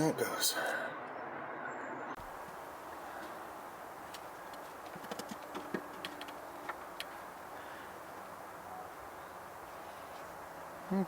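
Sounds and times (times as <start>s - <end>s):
low background noise: 0.0s - 11.0s
light sharp clicks and taps: 4.1s - 7.2s.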